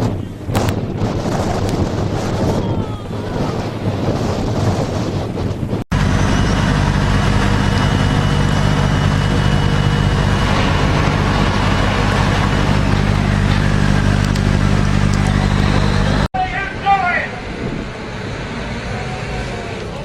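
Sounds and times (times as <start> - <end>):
wind buffeting microphone: 0.0 - 16.3
engine droning: 5.9 - 16.3.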